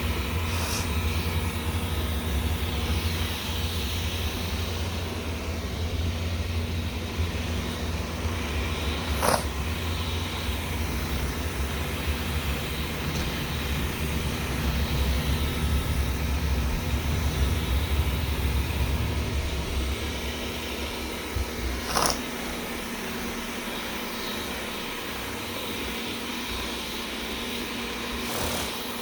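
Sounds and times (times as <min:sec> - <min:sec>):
robot vacuum humming: 0:00.0 - 0:29.0
sharp scrape: 0:00.4 - 0:01.2, 0:09.0 - 0:09.6, 0:21.8 - 0:22.3, 0:28.2 - 0:28.9.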